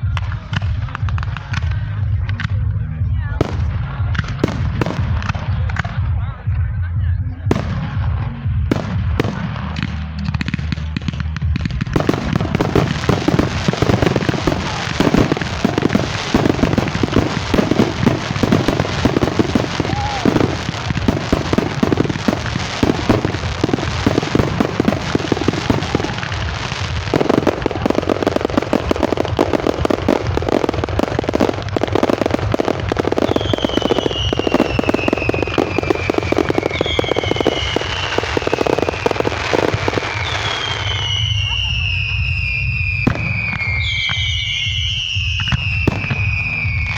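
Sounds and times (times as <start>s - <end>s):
fireworks crackling bangs: 0.0s - 6.8s, 7.4s - 46.9s
falling firework whistles: 33.2s - 39.1s, 39.7s - 46.9s.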